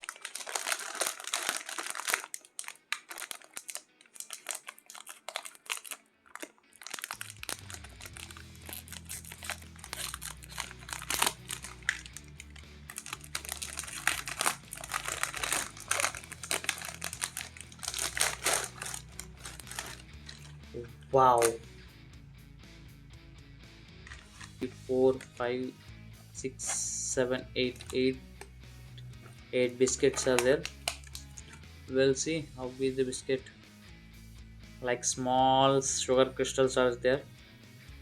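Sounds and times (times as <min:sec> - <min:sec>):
plastic wrapper crinkling: 0:00.0 - 0:20.6, 0:21.4 - 0:21.6, 0:24.1 - 0:24.6, 0:29.9 - 0:31.6
low background music: 0:00.3 - 0:38.0.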